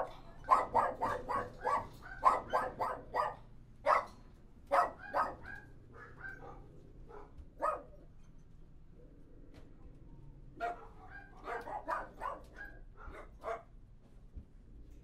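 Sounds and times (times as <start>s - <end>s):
dog barking: 0.0s - 8.0s, 10.6s - 13.7s.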